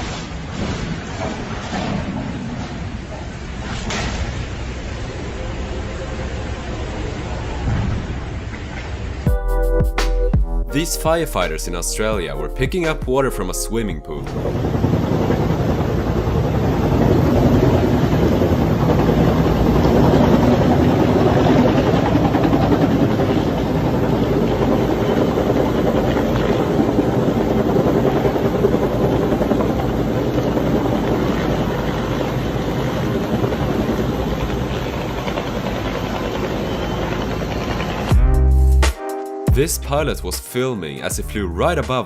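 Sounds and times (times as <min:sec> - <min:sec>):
helicopter rotor beating: 0:14.1 - 0:38.4.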